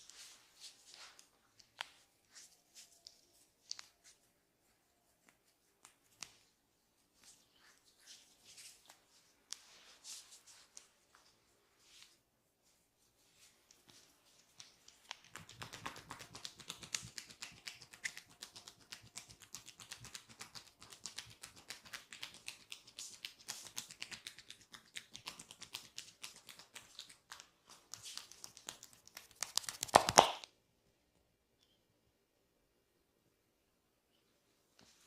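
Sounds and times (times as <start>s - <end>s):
hands tapping on head: 28.4s - 30.5s.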